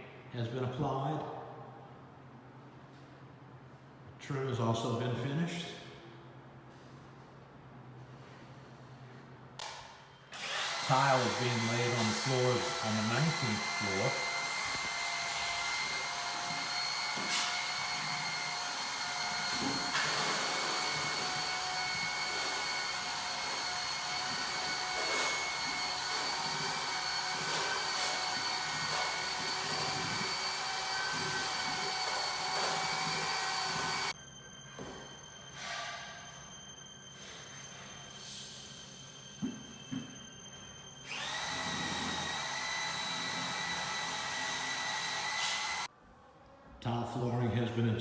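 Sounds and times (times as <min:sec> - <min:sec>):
machine motor whine: 0:10.4 - 0:34.1, 0:36.8 - 0:45.9.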